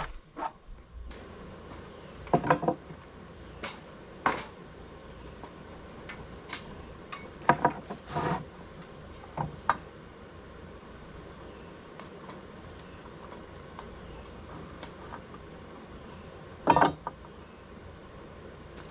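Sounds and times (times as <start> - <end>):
tools clinking and knocking: 3.6 - 4.6, 16.7 - 17.1.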